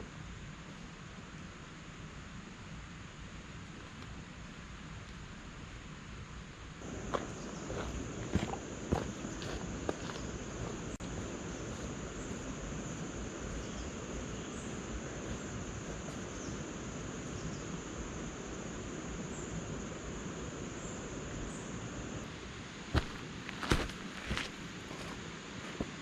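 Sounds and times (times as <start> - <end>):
background hiss: 0.0 - 26.0
insects trilling: 6.8 - 26.0.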